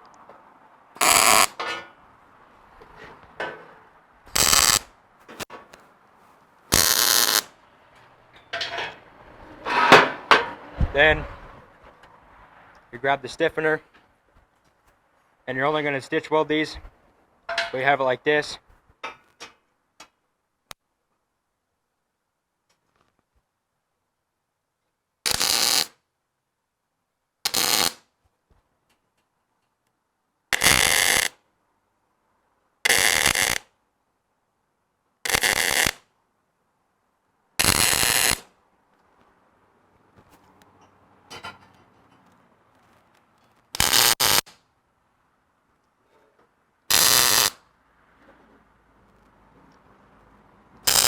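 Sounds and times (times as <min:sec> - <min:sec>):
welding arc crackle: 0:01.0 - 0:01.6, 0:04.3 - 0:05.5, 0:06.7 - 0:07.6, 0:25.3 - 0:26.0, 0:27.5 - 0:28.0, 0:30.6 - 0:31.4, 0:32.9 - 0:33.7, 0:35.3 - 0:36.0, 0:37.6 - 0:38.5, 0:43.8 - 0:44.6, 0:46.9 - 0:47.6.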